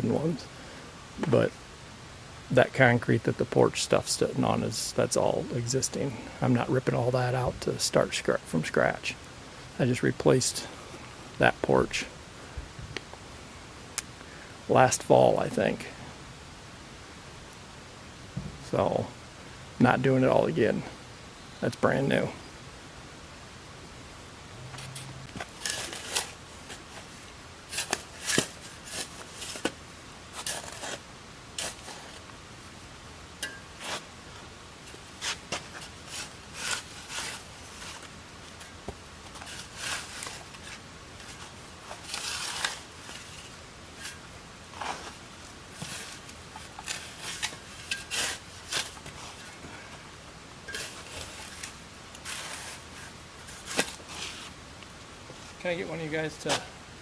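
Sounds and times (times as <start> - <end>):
metal tool scraping grit: 45.8 - 49.5.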